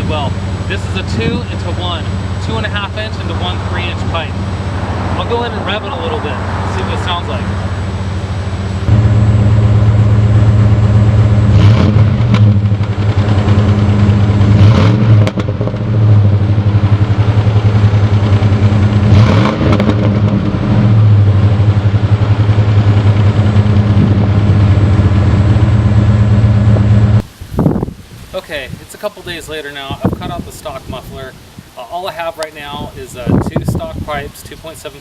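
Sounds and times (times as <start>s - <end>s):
engine idling and revving: 0.0s - 27.3s.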